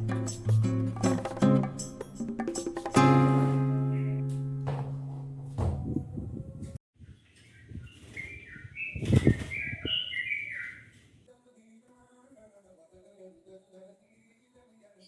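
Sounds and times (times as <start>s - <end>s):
held musical chord: 3.0s - 5.6s
small birds chirping: 7.0s - 11.2s.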